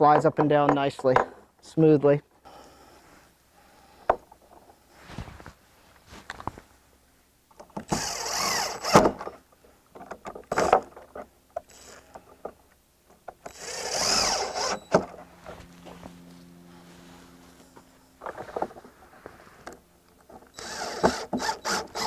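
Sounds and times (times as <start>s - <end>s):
power drill running: 7.9s - 9.4s, 13.4s - 22.0s.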